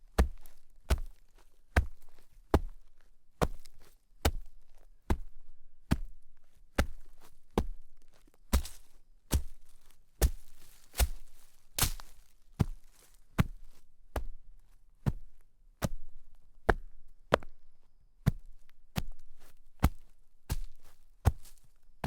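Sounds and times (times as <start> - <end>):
footsteps crunching through snow: 8.5 - 13.7, 20.5 - 21.7.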